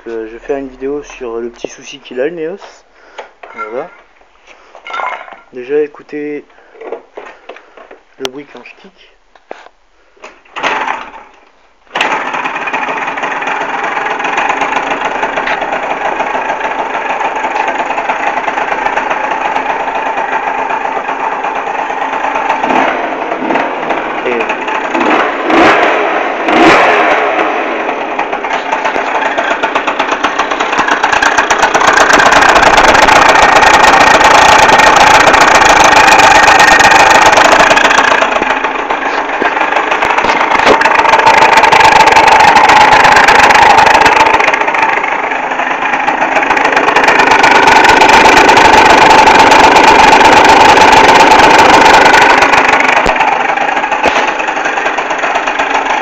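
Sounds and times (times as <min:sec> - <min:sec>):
scooter engine idling and revving: 0:12.0 - 0:56.0.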